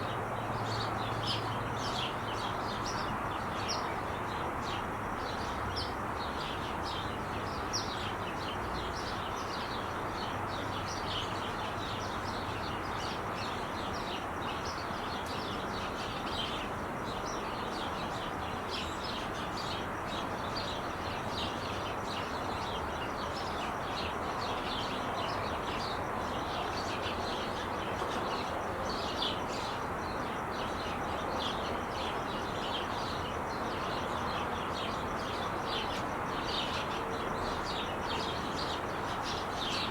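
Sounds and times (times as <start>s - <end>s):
freeway traffic roar: 0.0s - 13.9s.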